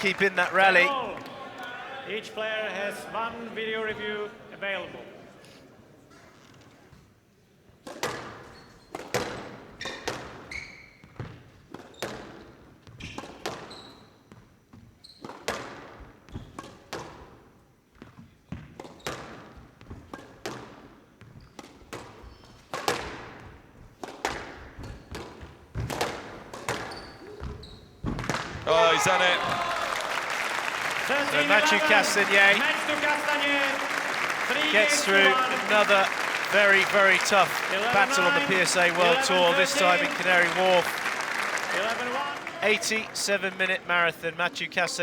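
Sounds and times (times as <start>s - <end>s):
court shoes squeaking: 7.9s - 17.2s, 21.2s - 22.7s, 24.2s - 42.7s.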